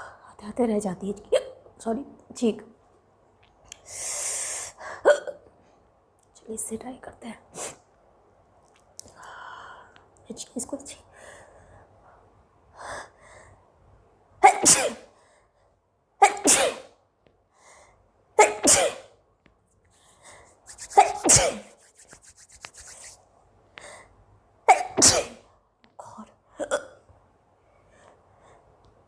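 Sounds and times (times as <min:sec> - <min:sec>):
woman sneezing: 0:21.0 - 0:21.7, 0:24.7 - 0:25.4.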